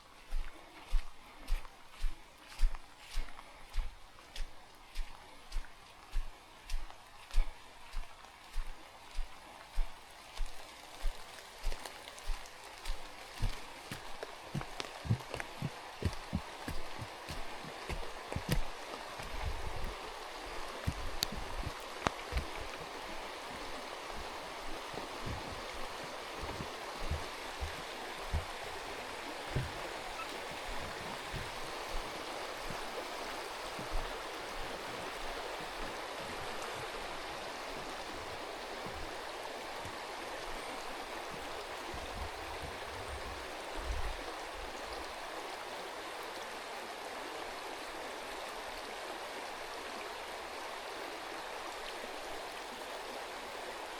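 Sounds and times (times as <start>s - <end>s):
river rushing: 7.5s - 53.9s
short low thumps: 23.5s - 28.8s.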